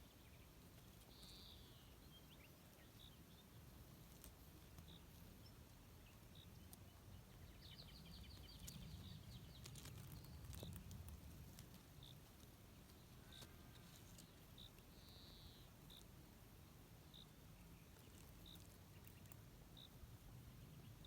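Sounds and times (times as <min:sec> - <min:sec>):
rapid insect ticking: 0:03.0 - 0:06.9, 0:07.5 - 0:16.2, 0:17.0 - 0:20.1
insect chirping: 0:13.2 - 0:16.1, 0:17.0 - 0:20.1.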